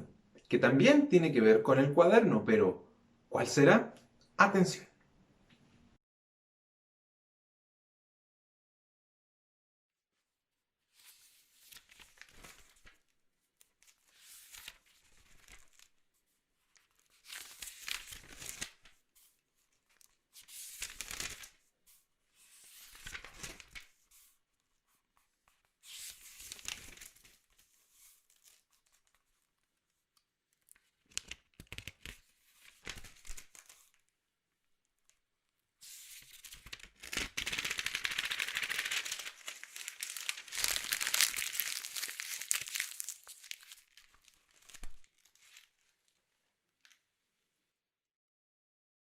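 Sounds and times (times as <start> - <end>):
notebook pages turning: 11.0 - 16.0, 16.7 - 29.5, 30.6 - 34.0, 35.8 - 45.8
paper crackling: 11.0 - 29.7, 30.5 - 34.0, 35.8 - 46.1.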